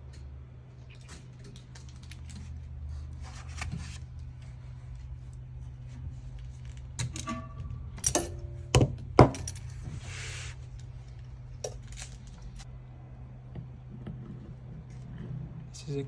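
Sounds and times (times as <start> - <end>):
metal parts clinking: 7.0 - 9.9.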